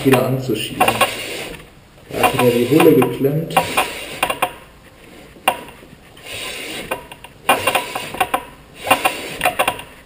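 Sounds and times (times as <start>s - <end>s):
wheel spinning with rubbing rush: 0.0s - 5.4s, 6.0s - 10.0s
metallic clicks and knocks: 6.9s - 10.0s.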